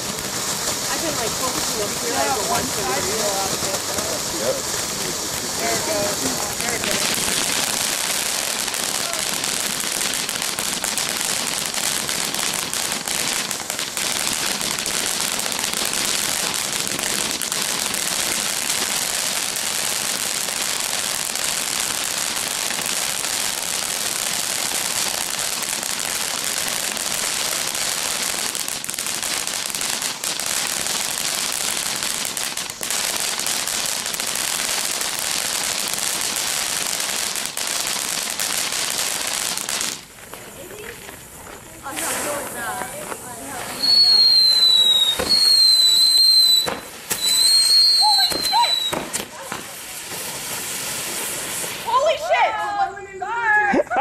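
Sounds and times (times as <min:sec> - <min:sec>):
firework crackling and hissing: 0:00.0 - 0:54.0.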